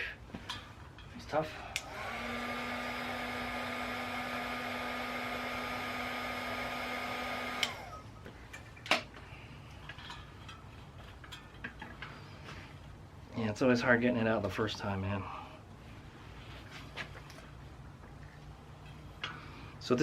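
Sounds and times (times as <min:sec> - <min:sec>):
heat gun blowing with motor whine: 0:01.7 - 0:08.1.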